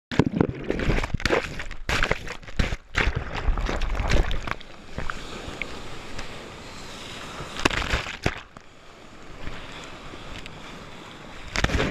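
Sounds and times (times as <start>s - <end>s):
water sloshing and splashing: 0.1s - 6.3s, 7.5s - 8.7s.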